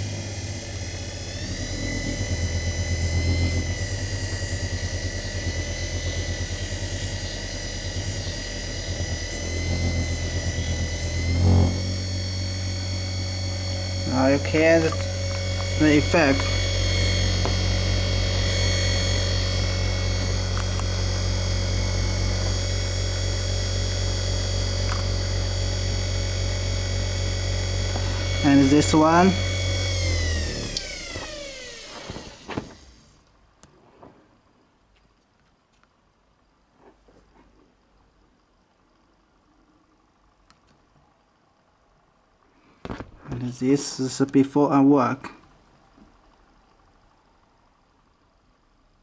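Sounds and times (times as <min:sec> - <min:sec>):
burnishing machine motor humming: 0:00.0 - 0:33.1
steady high whine: 0:00.0 - 0:33.6.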